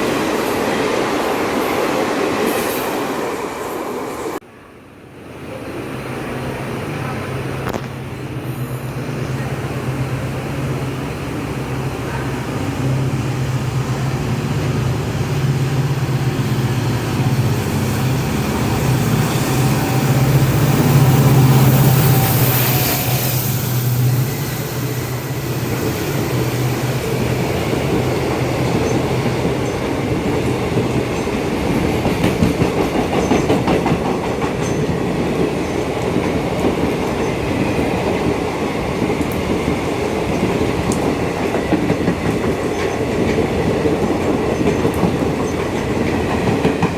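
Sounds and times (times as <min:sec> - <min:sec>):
train passing hum: 0:00.0 - 0:46.9
train wheels clattering: 0:14.6 - 0:46.9.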